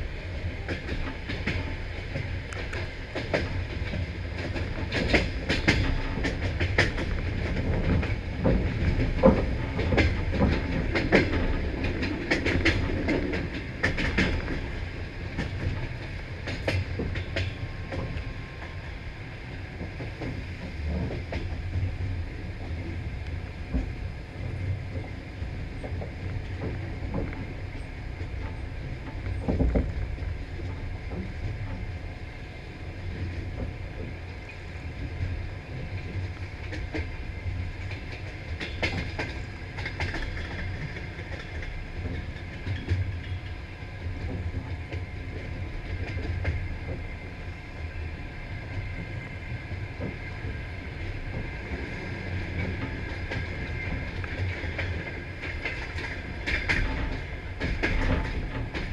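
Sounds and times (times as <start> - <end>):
train rumbling on rails: 0.0 - 58.9
wheels clattering over rail joints: 0.6 - 18.3, 34.9 - 47.4, 48.7 - 58.9.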